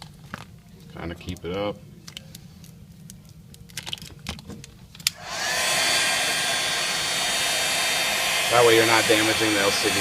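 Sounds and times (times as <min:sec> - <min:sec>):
hot-air blower running: 0:05.1 - 0:10.0.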